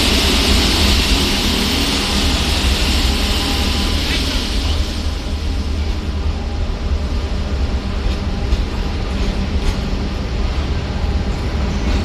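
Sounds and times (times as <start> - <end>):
freight train rumbling past: 0.0 - 12.0.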